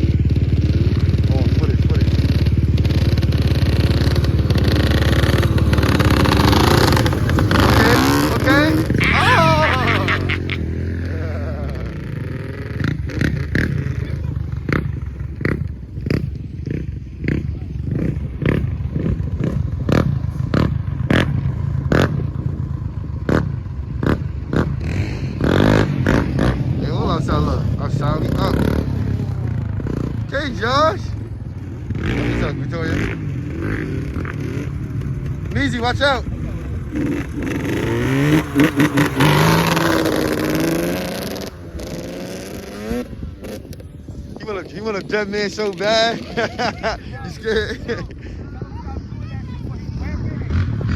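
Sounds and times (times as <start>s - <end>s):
two-stroke engine running: 0.0s - 48.4s
vehicle engine revving hard: 2.4s - 14.1s, 35.8s - 43.7s.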